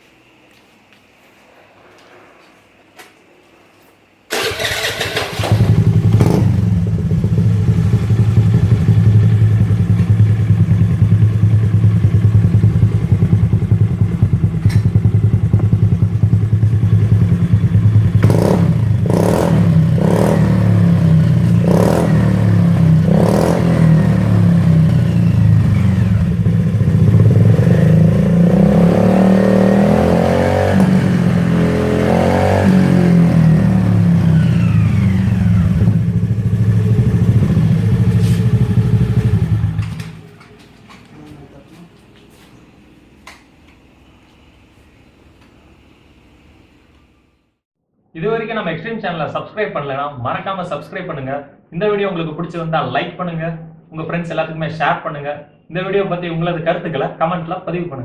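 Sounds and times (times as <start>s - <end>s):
scooter engine revving: 4.3s - 40.3s.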